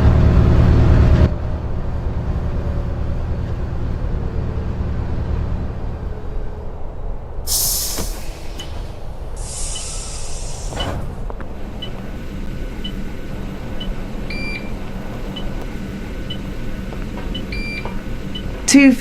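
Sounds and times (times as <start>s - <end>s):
bus engine running: 0.0s - 19.0s
compressed-air hiss: 7.5s - 11.3s.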